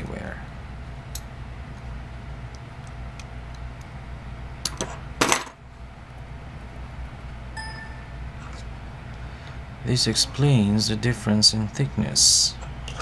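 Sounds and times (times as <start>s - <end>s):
steady low hum: 0.0s - 13.0s
brief ringing tone: 7.6s - 8.4s.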